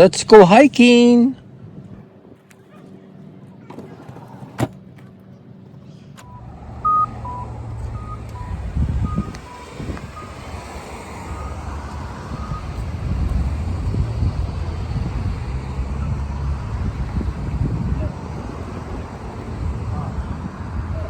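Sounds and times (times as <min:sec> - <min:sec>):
van engine starting and running: 0:06.0 - 0:21.0.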